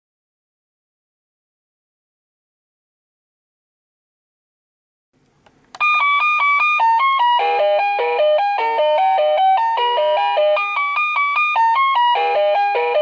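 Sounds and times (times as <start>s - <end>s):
doorbell chime melody: 5.8s - 13.0s.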